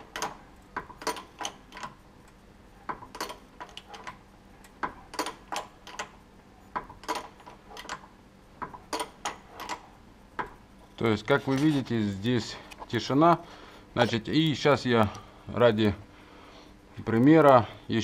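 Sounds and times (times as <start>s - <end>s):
jack clicking: 0.0s - 2.0s, 2.8s - 6.2s, 6.8s - 10.6s.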